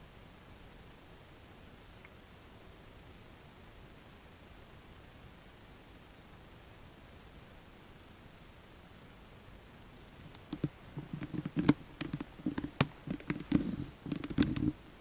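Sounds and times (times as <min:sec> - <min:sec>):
faint hiss: 0:00.0 - 0:15.0
sharp clicks and light taps: 0:10.2 - 0:14.8.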